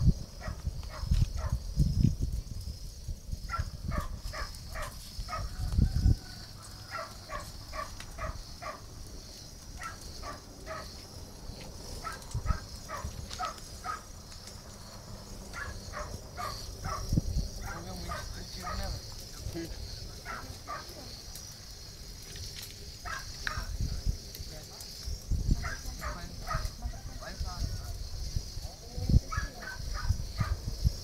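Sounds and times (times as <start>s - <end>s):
insects chirring: 0.0s - 31.0s
dog barking: 0.4s - 1.6s, 3.5s - 5.5s, 6.9s - 8.8s, 9.8s - 10.9s, 12.0s - 14.1s, 15.5s - 17.1s, 20.2s - 20.9s, 23.0s - 23.7s, 25.6s - 26.7s, 29.3s - 30.6s.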